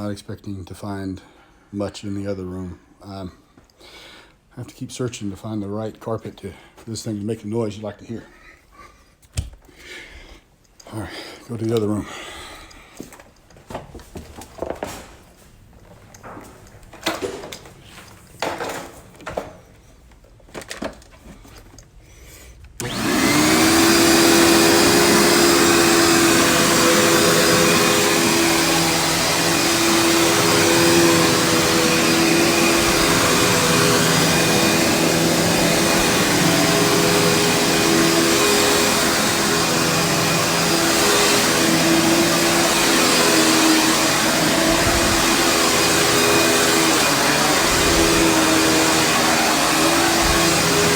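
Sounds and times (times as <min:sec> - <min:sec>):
knocks and clunks: 0:18.4 - 0:19.7
vacuum cleaner running on carpet: 0:22.8 - 0:50.9.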